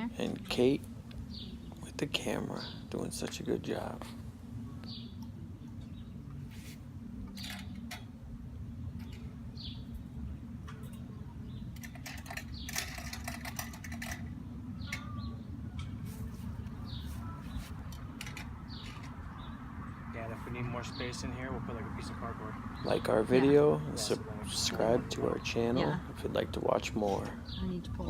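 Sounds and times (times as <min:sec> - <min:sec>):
steady low rumble: 0:00.0 - 0:28.0
bird chirps: 0:14.7 - 0:16.0.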